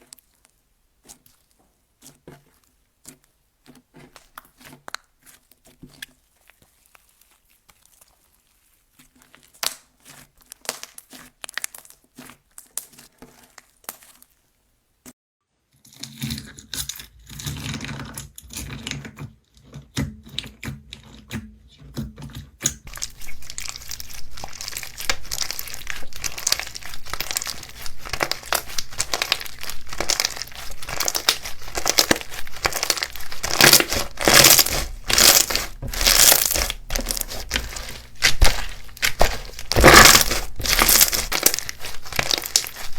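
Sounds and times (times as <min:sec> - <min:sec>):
slime squeezed crackling and popping: 0:00.0 - 0:14.4, 0:22.9 - 0:42.9.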